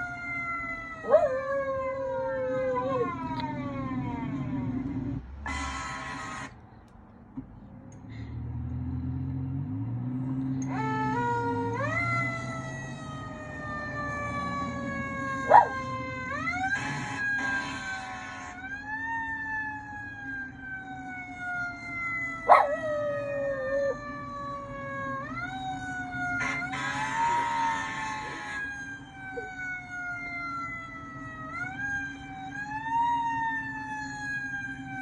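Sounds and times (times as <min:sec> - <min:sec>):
wailing siren: 0:00.0 - 0:06.5, 0:08.6 - 0:35.0
dog howling: 0:15.5 - 0:15.8, 0:22.4 - 0:24.0.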